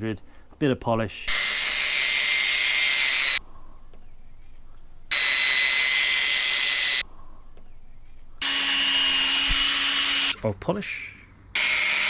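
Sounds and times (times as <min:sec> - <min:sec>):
machine hissing and whining: 0:00.0 - 0:10.4.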